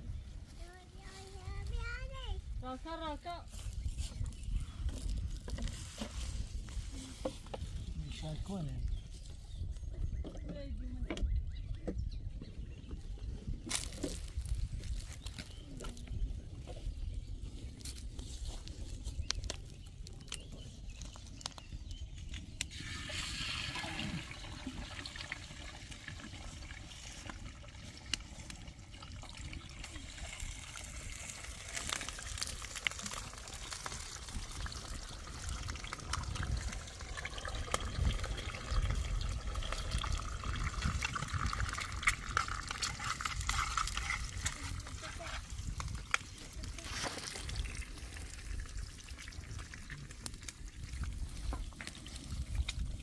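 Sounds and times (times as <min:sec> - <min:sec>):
water trickling: 0:22.7 - 0:53.0.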